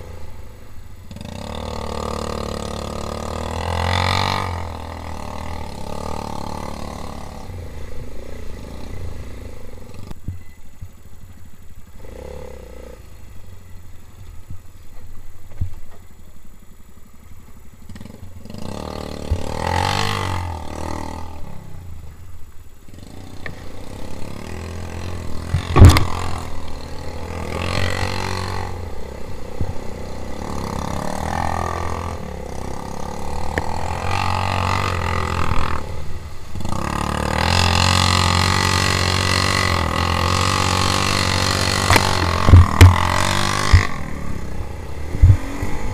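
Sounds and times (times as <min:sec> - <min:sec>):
quad bike engine revving: 0:00.0 - 0:10.2, 0:12.0 - 0:13.4, 0:17.8 - 0:22.2, 0:22.8 - 0:45.9
sharp knock: 0:41.9 - 0:43.9.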